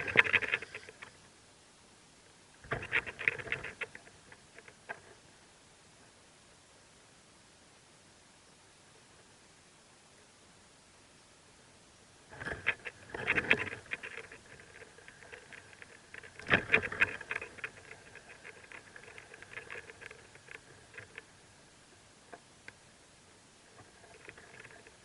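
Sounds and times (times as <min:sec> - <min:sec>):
nestlings rustling and chattering: 0:00.0 - 0:01.2, 0:12.3 - 0:22.8, 0:23.6 - 0:25.0.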